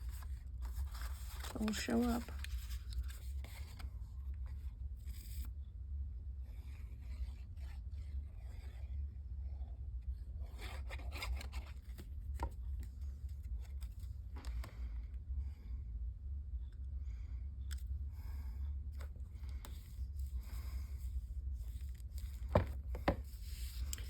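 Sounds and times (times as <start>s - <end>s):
paper rustling and scraping: 0.0s - 5.5s, 10.4s - 14.8s, 19.0s - 24.0s
steady low hum: 0.0s - 24.0s.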